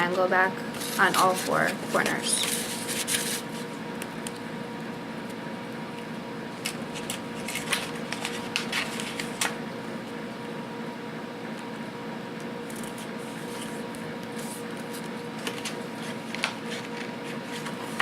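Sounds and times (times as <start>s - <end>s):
steady hum: 0.0s - 18.0s
paper crinkling and creasing: 0.8s - 3.7s, 6.6s - 9.6s, 12.7s - 18.0s.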